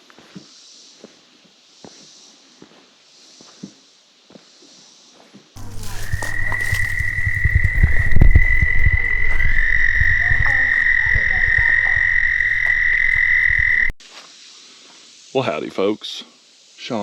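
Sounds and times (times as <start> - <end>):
high-pitched frog trill: 5.6 - 14.0
low uneven rumble: 5.6 - 14.0.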